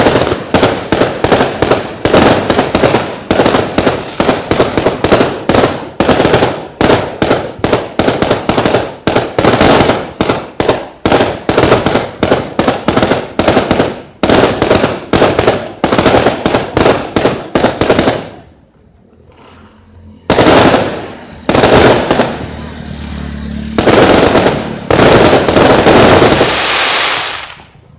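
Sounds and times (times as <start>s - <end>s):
firework bangs: 0.0s - 18.7s, 19.3s - 27.9s
loud bangs: 20.0s - 27.7s.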